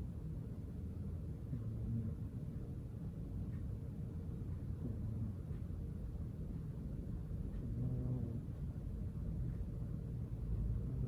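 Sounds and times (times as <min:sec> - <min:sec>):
cat snoring: 0:07.6 - 0:08.5.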